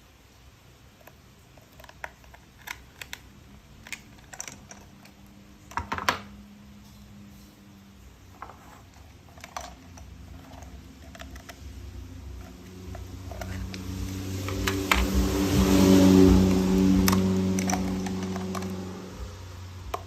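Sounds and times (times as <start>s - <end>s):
plastic toy parts clicking: 1.0s - 6.1s, 8.8s - 11.7s, 17.0s - 18.9s.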